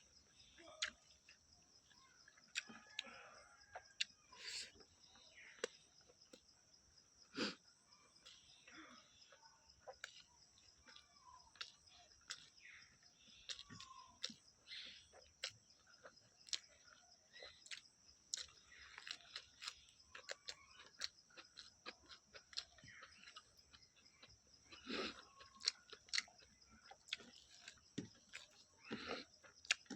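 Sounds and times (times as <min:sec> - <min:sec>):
chewing and lip smacking: 0:02.2 - 0:04.8, 0:09.3 - 0:29.9.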